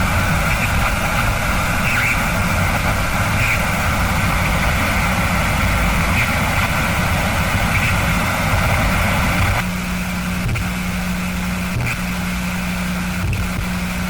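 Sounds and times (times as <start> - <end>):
low rumble: 0.0 - 9.6
radio static hiss: 0.0 - 14.0
steady low hum: 0.0 - 14.0.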